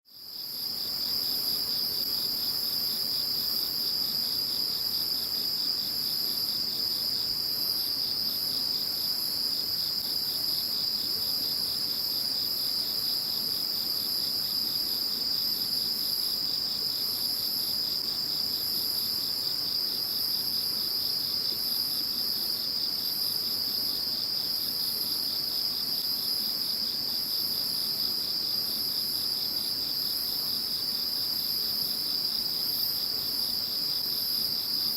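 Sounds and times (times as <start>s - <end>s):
faint insect chirping: 0.1s - 34.9s
rapidly pulsing insect call: 0.1s - 34.9s.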